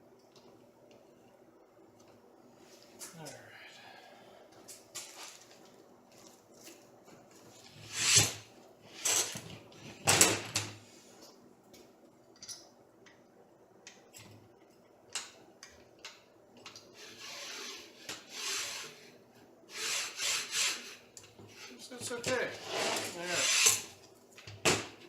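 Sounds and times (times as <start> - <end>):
rubbing scrape: 7.7 - 8.4, 17.0 - 19.1, 19.7 - 21.8, 22.5 - 23.9.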